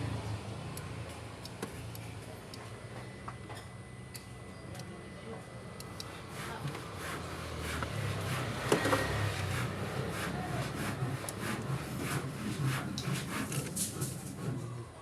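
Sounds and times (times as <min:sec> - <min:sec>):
scraping strokes: 0:06.0 - 0:14.8.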